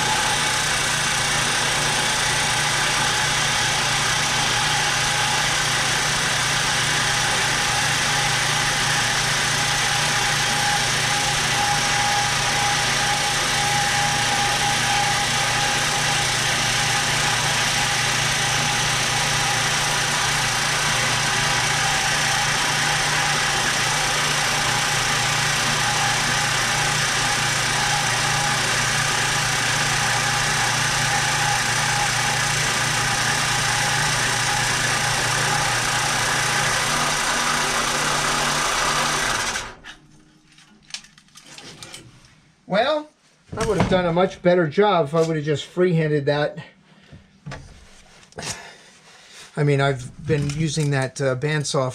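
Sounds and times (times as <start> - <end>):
bandsaw whining: 0.0 - 40.2.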